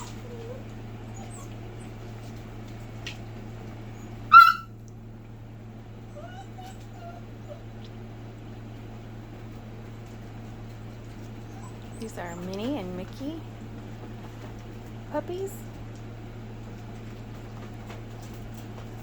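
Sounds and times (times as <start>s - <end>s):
faint puppy whimpers: 0.0s - 2.0s, 6.0s - 8.0s, 11.4s - 12.7s
puppy yelping: 0.0s - 2.0s, 3.9s - 4.8s, 6.1s - 7.9s, 11.3s - 12.6s
steady low hum: 0.0s - 19.0s.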